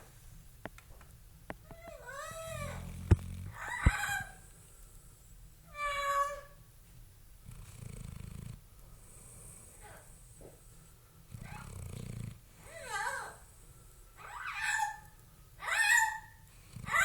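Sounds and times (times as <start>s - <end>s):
pet snoring: 2.2s - 3.7s, 7.4s - 10.6s, 11.3s - 13.3s, 16.5s - 17.0s.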